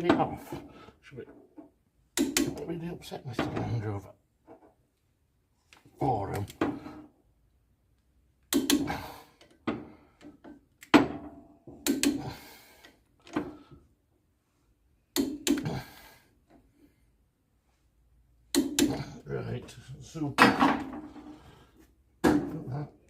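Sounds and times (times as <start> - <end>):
metal tools knocking and clattering: 20.4 - 21.3.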